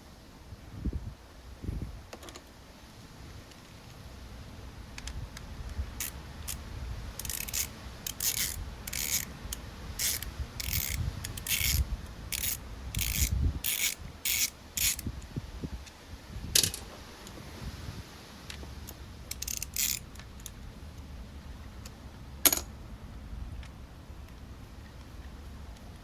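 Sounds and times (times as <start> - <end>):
ratchet wrench clicking: 6.0 - 6.6, 7.2 - 15.1, 19.3 - 20.6.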